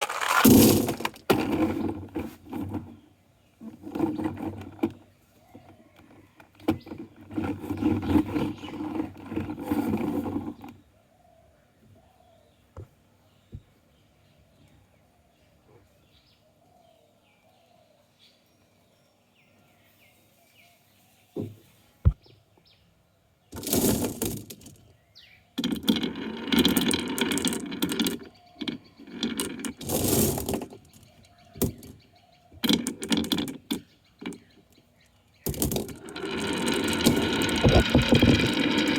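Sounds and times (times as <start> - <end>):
marbles rattling down wooden track: 0.0 - 2.0, 23.6 - 24.8, 25.6 - 31.9, 32.6 - 34.4, 35.5 - 38.9.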